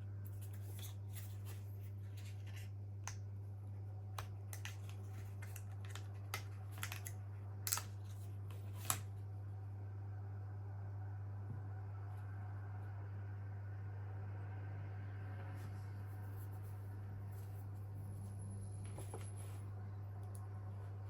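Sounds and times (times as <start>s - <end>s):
steady low hum: 0.0s - 21.0s
small clicks and handling noises: 0.2s - 3.3s, 4.1s - 9.1s.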